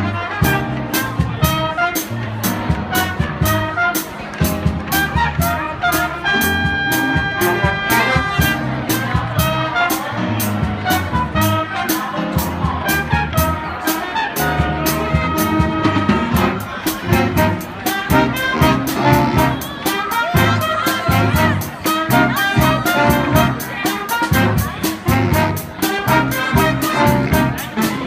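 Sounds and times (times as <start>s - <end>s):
jazz band playing swing: 0.0s - 28.0s
trumpets playing melody: 0.0s - 28.0s.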